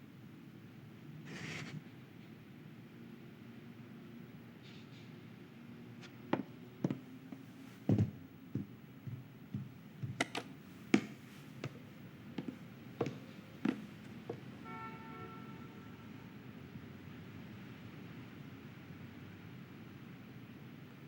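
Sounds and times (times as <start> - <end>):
soft taps and thuds: 6.3 - 11.8.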